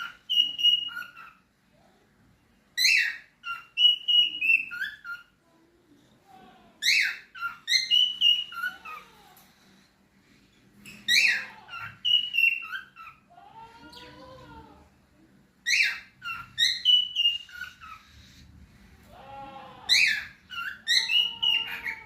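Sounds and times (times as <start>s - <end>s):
cockatiel whistling and chirping: 0.0s - 1.4s, 2.8s - 5.3s, 6.8s - 9.0s, 10.8s - 13.2s, 15.6s - 18.2s, 19.9s - 22.0s.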